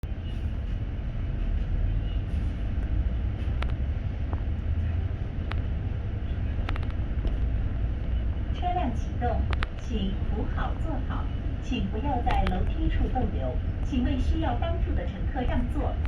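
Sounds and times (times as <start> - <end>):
bus engine and road rumble: 0.0 - 16.0
bus body clicks and rattles: 3.4 - 8.2.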